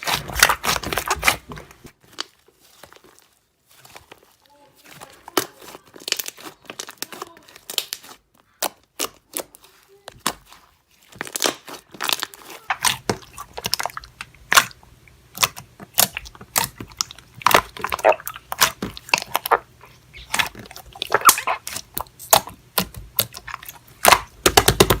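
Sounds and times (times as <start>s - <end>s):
wet pops of squished slime: 20.2s - 25.0s.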